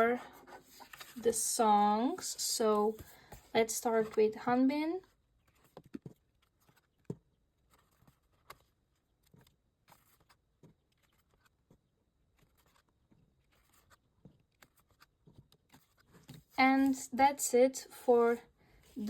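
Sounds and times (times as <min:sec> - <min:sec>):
pages of photo book turning: 0:00.4 - 0:01.4, 0:05.4 - 0:17.0.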